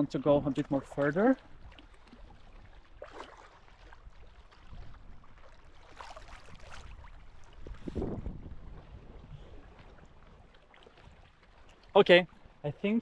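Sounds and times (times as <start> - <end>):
water splashing around legs: 0.0 - 9.0.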